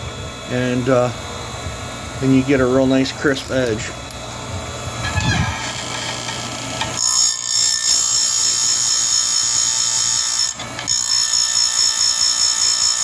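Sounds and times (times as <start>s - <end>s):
shrill grinding whine: 0.0s - 9.4s
grinder motor running: 3.1s - 13.0s.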